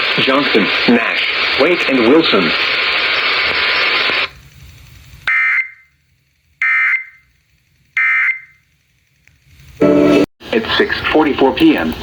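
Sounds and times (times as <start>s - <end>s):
buzzy data bursts: 0.0s - 9.0s
radio static hissing: 0.0s - 12.0s.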